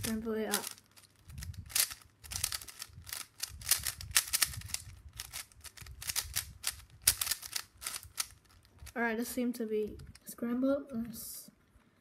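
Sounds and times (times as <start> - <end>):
speed cube clicking: 0.0 - 9.0.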